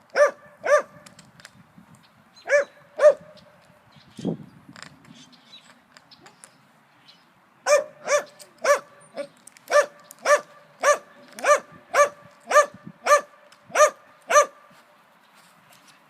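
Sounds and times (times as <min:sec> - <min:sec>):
dog barking: 0:00.2 - 0:01.0, 0:02.5 - 0:03.3, 0:07.7 - 0:08.9, 0:09.7 - 0:14.6.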